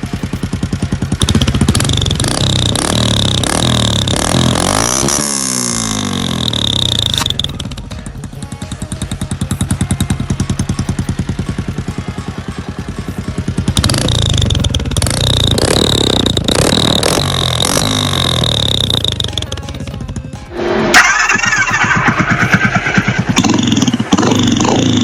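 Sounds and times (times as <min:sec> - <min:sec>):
motorcycle engine idling: 0:00.0 - 0:25.0
motorcycle engine revving: 0:00.0 - 0:25.0.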